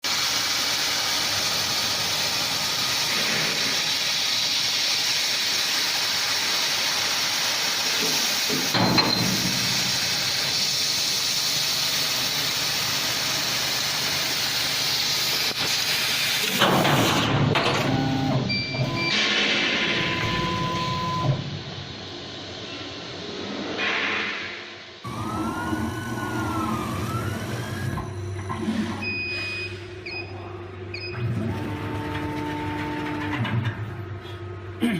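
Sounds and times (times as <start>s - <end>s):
hiss of assist gas: 0.1s - 16.6s.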